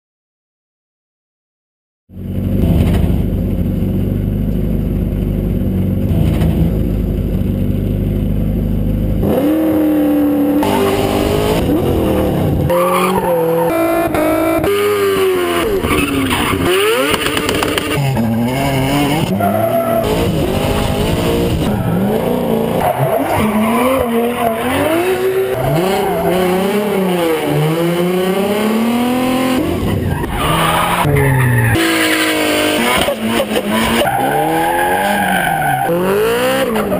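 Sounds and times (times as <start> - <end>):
car engine revving: 2.1 - 36.9
tires squealing: 9.3 - 36.9.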